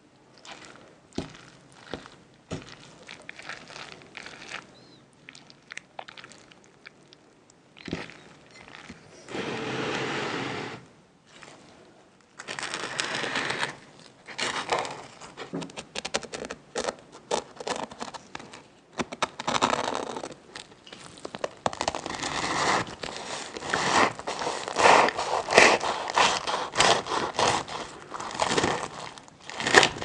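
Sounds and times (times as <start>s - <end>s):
crinkling: 0.0s - 9.6s, 11.3s - 30.0s
scraping and rustling: 20.9s - 30.0s.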